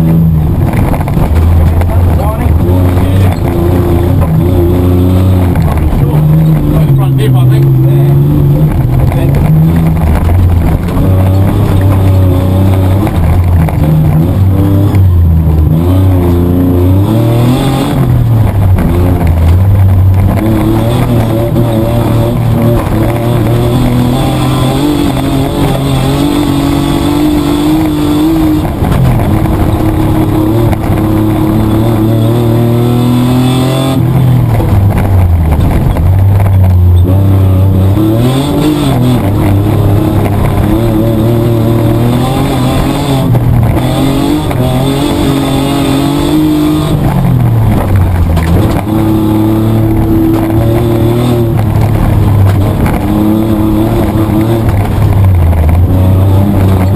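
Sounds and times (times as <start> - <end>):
car engine revving: 0.0 - 56.9.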